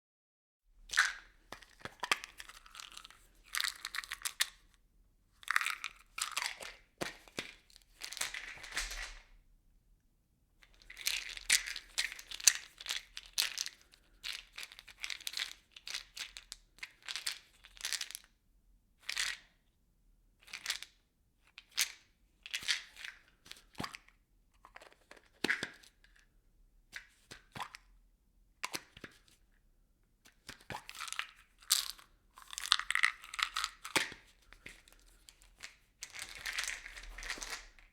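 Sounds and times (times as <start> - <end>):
objects rattling in plastic bottle: 5.5 - 9.3, 30.8 - 37.9.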